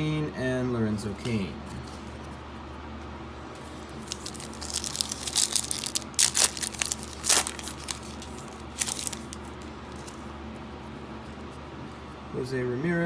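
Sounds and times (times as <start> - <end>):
foil wrapper crinkling: 3.6 - 10.2
foil wrapper tearing: 3.7 - 10.2.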